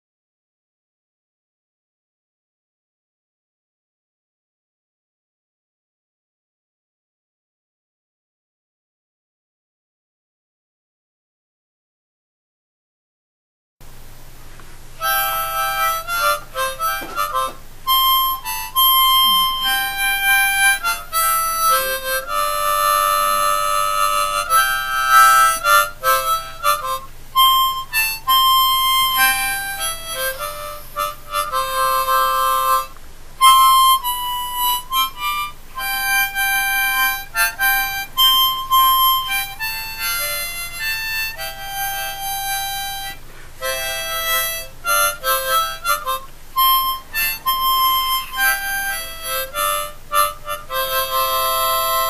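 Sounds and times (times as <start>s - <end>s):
reedy wind instrument melody: 15.0s - 52.0s.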